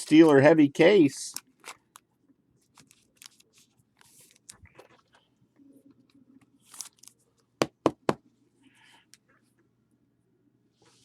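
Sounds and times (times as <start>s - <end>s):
plastic packaging crinkling: 6.6s - 7.2s.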